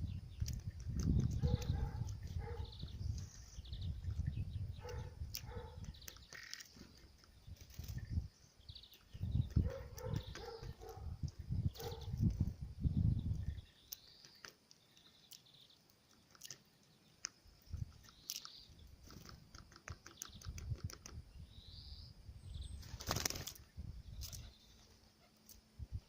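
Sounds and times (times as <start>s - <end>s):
birds pecking taps: 0.4s - 2.8s, 4.2s - 7.4s, 9.3s - 12.0s, 13.9s - 17.4s, 18.0s - 21.2s
flurry of wingbeats: 22.8s - 23.6s.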